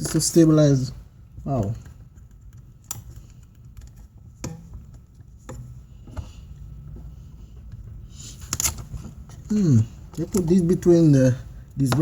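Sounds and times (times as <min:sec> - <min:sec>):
low steady hum: 0:00.0 - 0:12.0
small clicks and taps of parts: 0:01.6 - 0:06.3.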